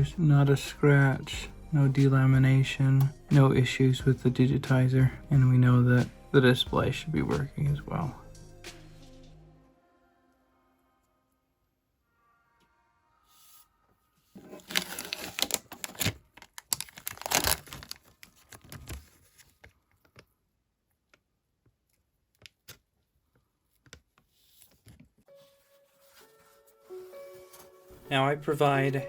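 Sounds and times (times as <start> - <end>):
crinkling and tearing: 14.4 - 20.2.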